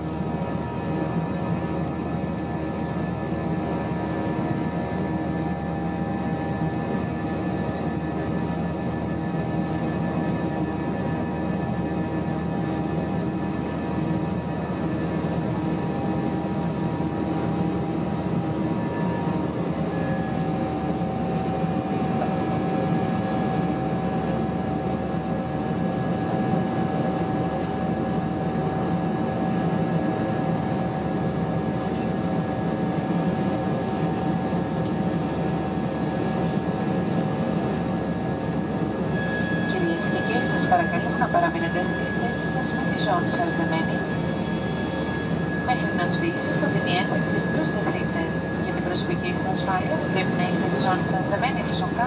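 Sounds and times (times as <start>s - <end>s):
airplane cabin roar: 0.0s - 52.0s
steady engine tones: 38.4s - 52.0s.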